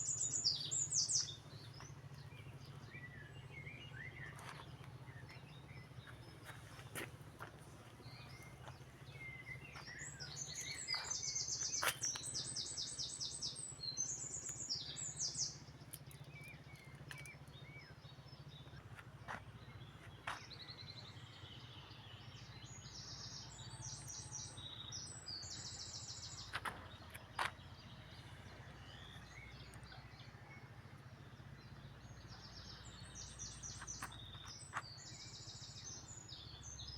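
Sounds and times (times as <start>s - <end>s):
steady low hum: 0.0s - 21.8s
songbirds trilling: 0.0s - 36.9s.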